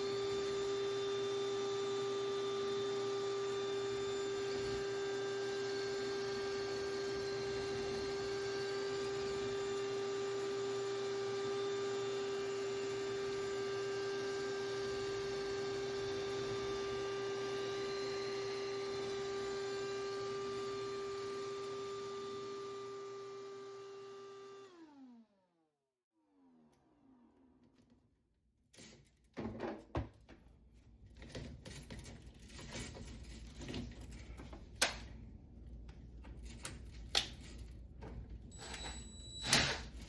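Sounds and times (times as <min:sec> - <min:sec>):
power tool motor whining: 0:00.0 - 0:25.4, 0:38.5 - 0:40.0.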